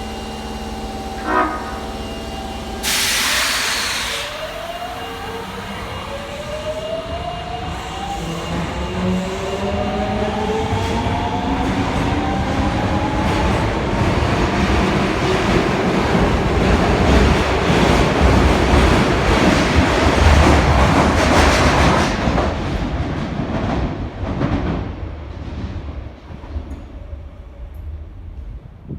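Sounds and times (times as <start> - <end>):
subway train motor whine: 0.0 - 19.5.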